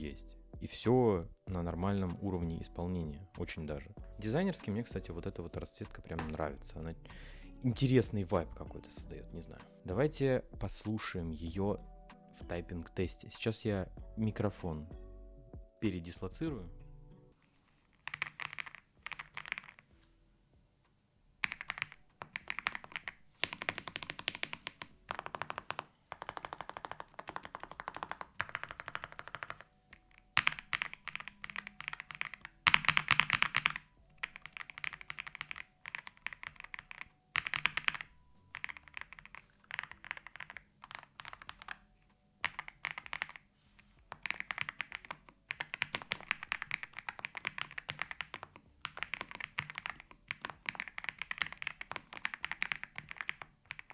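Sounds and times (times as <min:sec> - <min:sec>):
rapid mechanical keyboard clacks: 0:18.0 - 0:19.8, 0:21.4 - 0:41.8, 0:42.4 - 0:43.5, 0:44.1 - 0:53.9.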